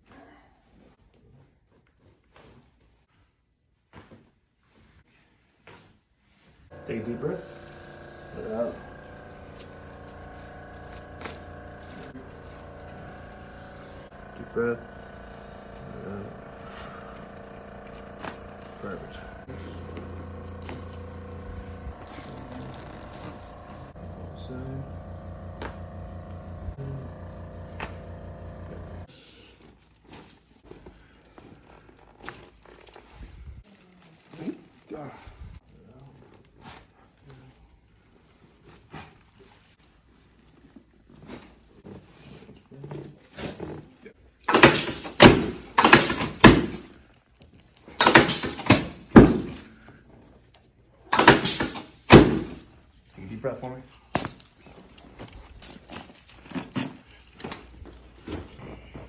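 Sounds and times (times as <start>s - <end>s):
low motor hum: 6.7s - 29.1s
thuds and cracks of adjustments: 44.5s - 47.0s, 48.0s - 49.7s, 51.2s - 52.7s.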